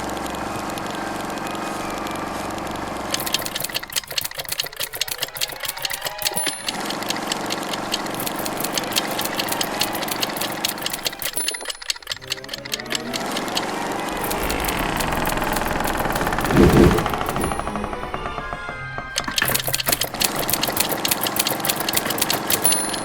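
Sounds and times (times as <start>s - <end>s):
fast ticking clatter: 0.0s - 23.0s
machine humming: 0.0s - 23.0s.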